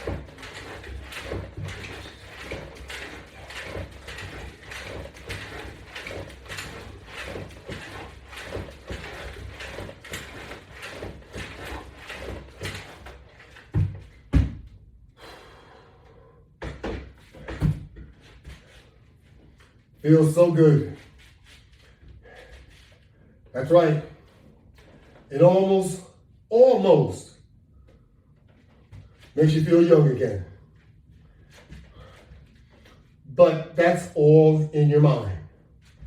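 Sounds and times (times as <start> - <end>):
resistance band rubbing and creaking: 0.0 - 14.3.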